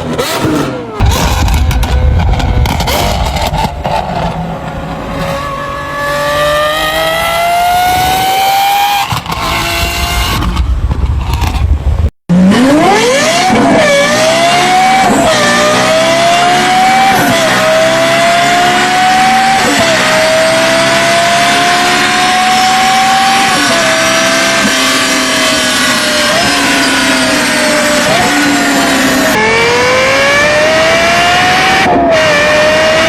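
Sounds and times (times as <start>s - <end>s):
supercar engines accelerating: 0.0s - 11.6s, 12.3s - 33.0s.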